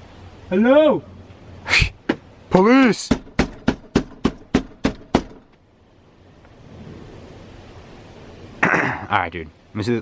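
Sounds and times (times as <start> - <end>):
rapid banging on a door: 3.0 - 5.5.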